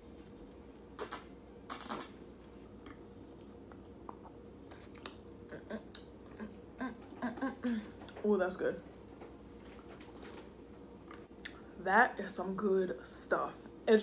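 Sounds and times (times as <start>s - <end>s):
slurping sips: 1.0s - 2.2s.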